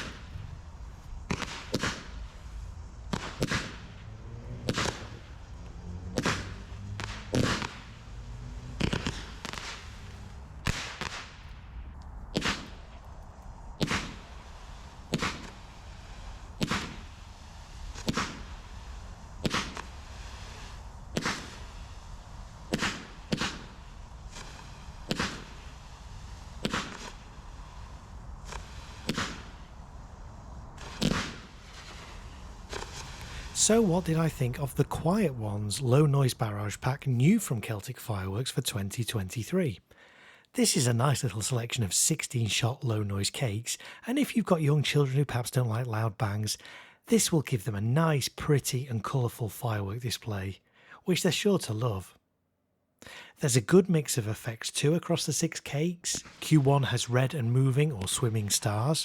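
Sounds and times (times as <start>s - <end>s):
short firework fizz: 0.0s - 35.5s, 56.2s - 56.6s
muted firework shots: 0.0s - 35.9s, 56.1s - 56.7s.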